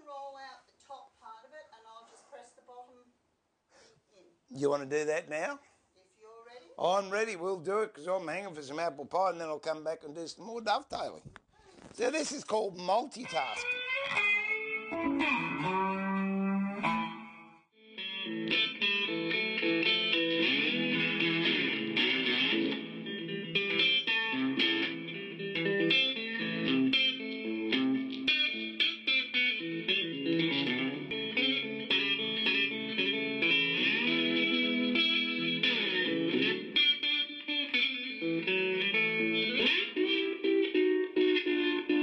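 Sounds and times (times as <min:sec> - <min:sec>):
electric guitar plucked notes: 0:13.4 - 0:42.0.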